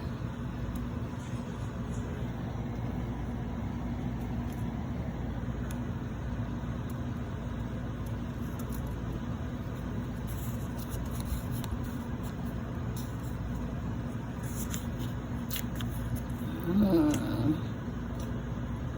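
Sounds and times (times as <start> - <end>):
person humming: 16.4 - 17.8.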